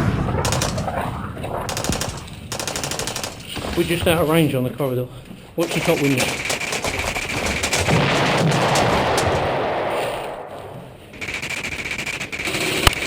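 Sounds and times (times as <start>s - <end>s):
airsoft guns firing: 0.4s - 4.0s, 5.6s - 10.3s, 11.1s - 13.0s.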